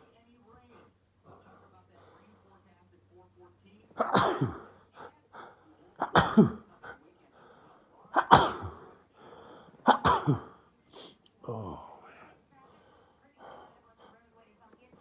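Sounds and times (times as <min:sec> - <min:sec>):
person sneezing: 0:06.0 - 0:06.6, 0:08.2 - 0:08.8, 0:09.9 - 0:11.1
short breaths: 0:09.2 - 0:09.8.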